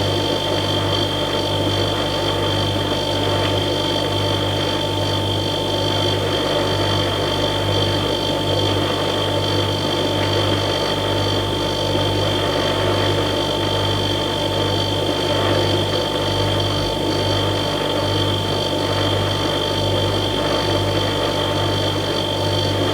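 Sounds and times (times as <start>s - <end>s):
refrigerator compressor hum: 0.0s - 22.9s.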